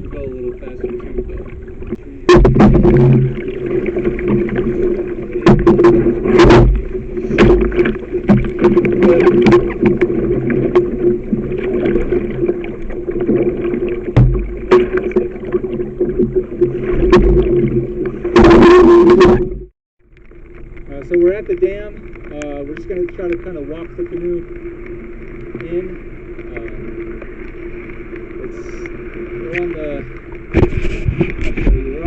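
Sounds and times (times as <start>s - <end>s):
steady hum: 0.0s - 32.0s
water rushing and splashing: 0.0s - 32.0s
knocks against canoe hull: 2.3s - 3.4s, 5.4s - 9.8s, 14.2s - 15.1s, 30.5s - 31.8s.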